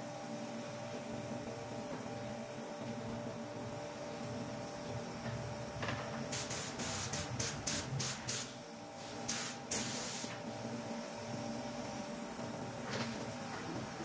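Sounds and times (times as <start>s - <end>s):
spraying hiss bursts: 6.3s - 10.4s.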